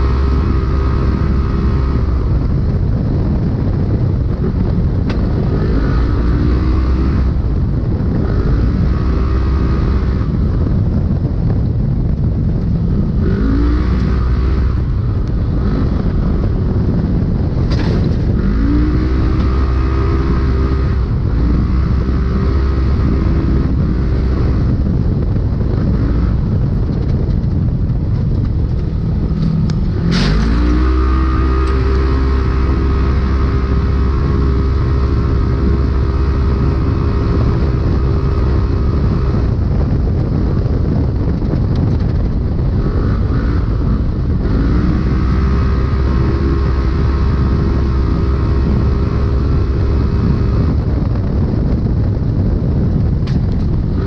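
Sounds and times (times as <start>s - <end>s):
racing engine revving: 0.0s - 2.7s, 4.3s - 10.7s, 12.9s - 25.0s, 28.3s - 40.3s, 42.7s - 51.0s
heavy rushing noise: 0.0s - 54.0s.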